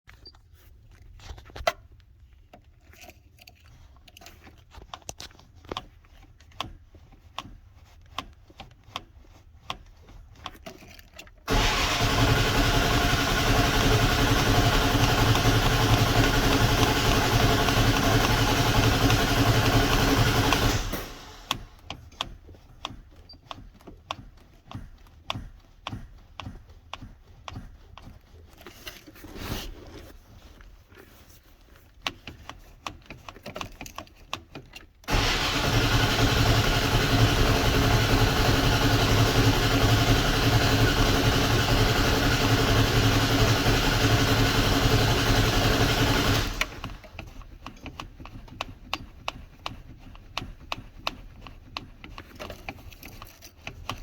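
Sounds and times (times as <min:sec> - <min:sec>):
engine starter cranking: 0:11.4 - 0:21.8, 0:35.0 - 0:47.3.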